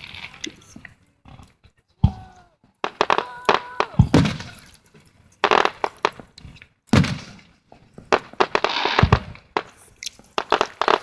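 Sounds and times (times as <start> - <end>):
fireworks bangs: 2.0 - 4.8, 5.4 - 11.0
fireworks crackling hiss: 2.8 - 11.0
deep fireworks boom: 2.9 - 4.7.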